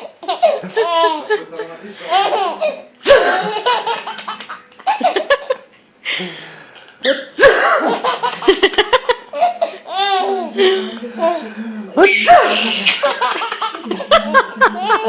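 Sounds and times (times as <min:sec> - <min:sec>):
baby belly-laughing: 0:00.0 - 0:01.3, 0:02.1 - 0:05.2, 0:07.8 - 0:10.5, 0:12.4 - 0:15.0
adult sneezing: 0:03.0 - 0:03.5, 0:07.0 - 0:08.0, 0:12.0 - 0:13.1.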